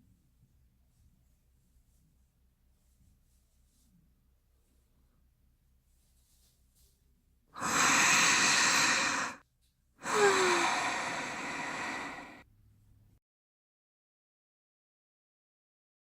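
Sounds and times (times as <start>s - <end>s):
falling wheeze: 7.6s - 9.4s, 10.0s - 12.4s
long noisy breaths: 7.6s - 9.4s, 10.0s - 12.4s.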